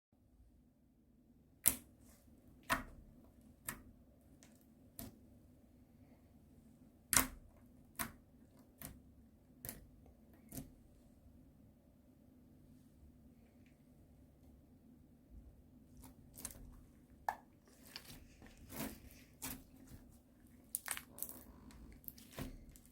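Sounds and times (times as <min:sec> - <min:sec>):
ice slime crackling: 0:20.6 - 0:22.9.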